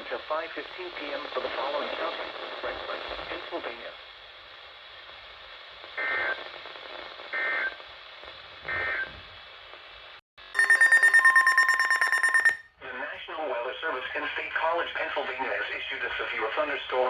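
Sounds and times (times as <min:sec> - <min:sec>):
receiver hiss: 0:00.0 - 0:11.3
shrill digital data bursts: 0:10.6 - 0:12.6.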